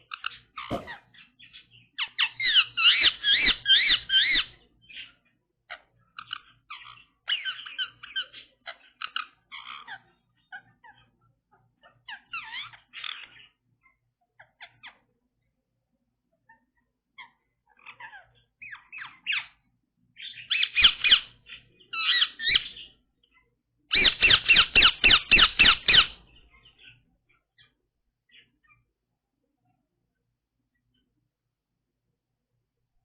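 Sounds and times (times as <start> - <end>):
parakeet chirping and squawking: 0.7 - 1.0, 17.2 - 19.6, 20.2 - 27.7.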